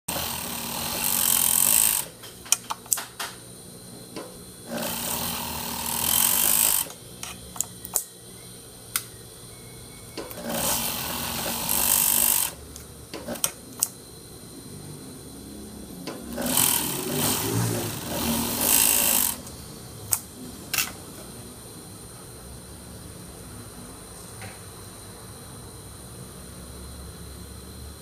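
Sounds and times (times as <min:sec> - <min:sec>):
overlock sewing machine running: 0:00.1 - 0:02.2, 0:04.7 - 0:07.0, 0:10.3 - 0:12.6, 0:16.2 - 0:19.6.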